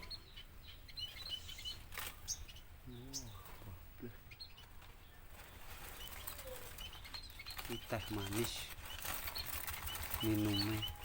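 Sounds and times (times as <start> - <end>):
songbirds chirping: 0.0 - 11.0.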